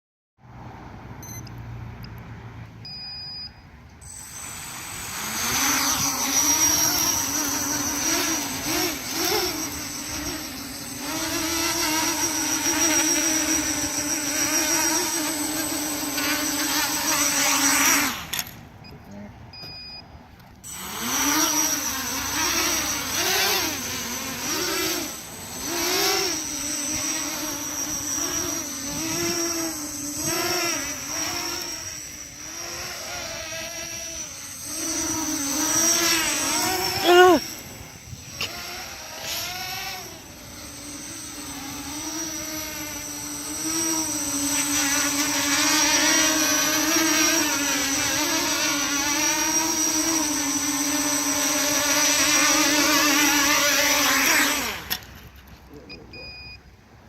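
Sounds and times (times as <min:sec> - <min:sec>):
short high beeps: 0:01.2 - 0:01.6, 0:02.8 - 0:04.6, 0:18.8 - 0:20.1, 0:55.9 - 0:56.7
drone motors whining: 0:02.9 - 0:56.4.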